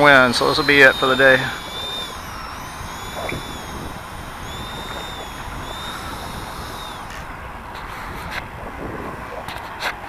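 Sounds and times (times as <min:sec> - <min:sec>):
high thin whine: 0:00.0 - 0:07.4
wind buffeting microphone: 0:00.1 - 0:10.0.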